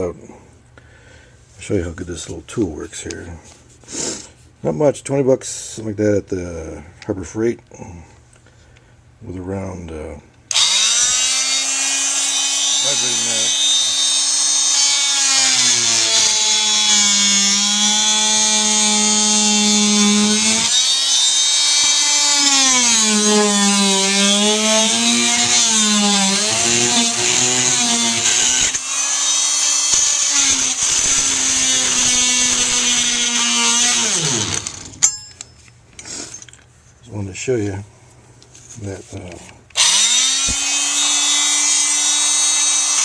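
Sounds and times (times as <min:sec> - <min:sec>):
multi-tool cutting metal: 0:10.5 - 0:35.3, 0:39.7 - 0:43.0.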